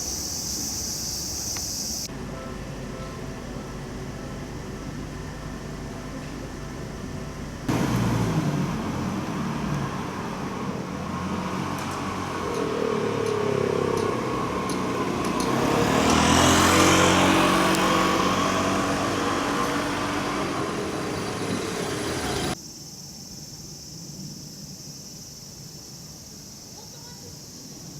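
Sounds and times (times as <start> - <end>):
motor vehicle passing: 7.5 - 22.6.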